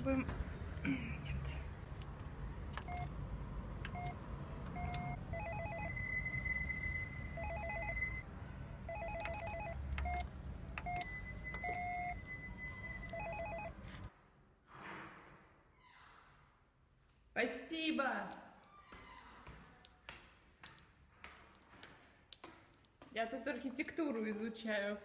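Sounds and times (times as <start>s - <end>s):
intercom keypad beeps: 4.8s - 8.2s
intercom trilling call tones: 4.8s - 8.2s.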